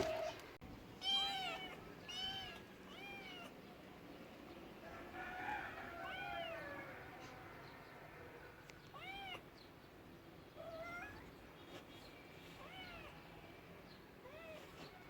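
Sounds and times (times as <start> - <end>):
cat meowing: 1.0 - 3.6, 10.6 - 11.3, 12.6 - 13.3.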